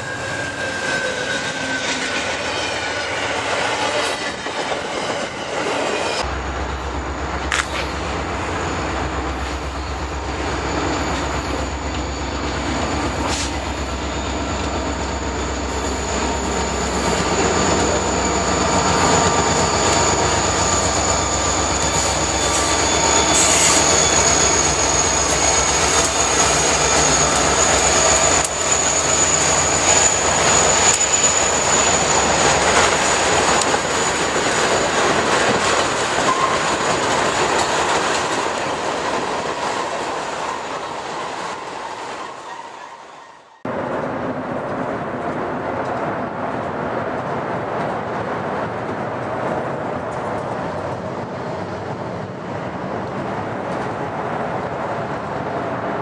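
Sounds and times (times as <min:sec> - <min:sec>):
high wheel squeal: 0:00.0 - 0:06.2, 0:08.6 - 0:37.6
train rumbling on rails: 0:00.0 - 0:56.0.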